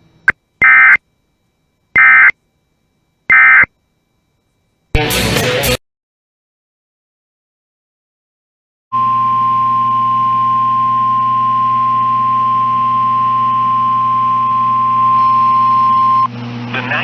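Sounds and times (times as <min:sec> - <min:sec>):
steady warning alarm tone: 0:00.0 - 0:04.6
low radio hum: 0:12.8 - 0:17.0.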